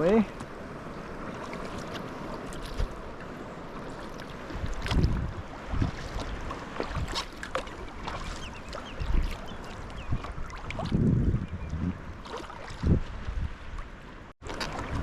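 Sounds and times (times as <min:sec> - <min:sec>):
paddle splashing water: 0:00.0 - 0:15.0
wind on microphone: 0:01.3 - 0:03.2, 0:04.3 - 0:13.9, 0:14.5 - 0:15.0.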